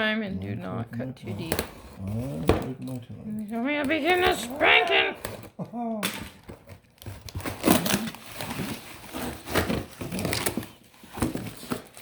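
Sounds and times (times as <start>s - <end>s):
plastic wrapping crinkling: 6.3s - 12.0s.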